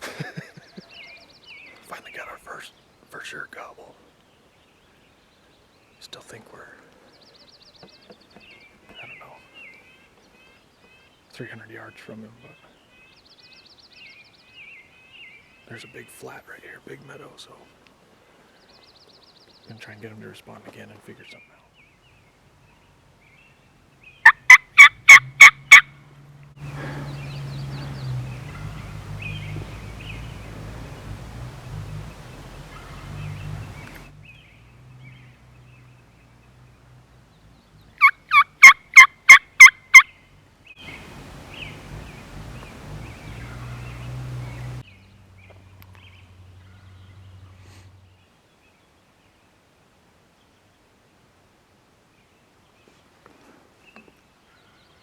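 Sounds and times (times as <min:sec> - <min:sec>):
turkey call yelps: 0:24.2 - 0:26.0, 0:26.6 - 0:34.1, 0:38.0 - 0:40.1.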